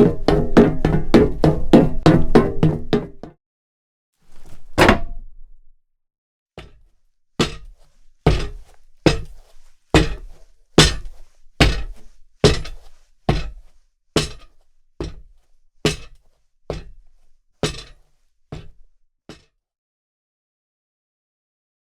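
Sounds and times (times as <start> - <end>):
footsteps on hard surface: 4.3 - 4.8, 6.6 - 19.4.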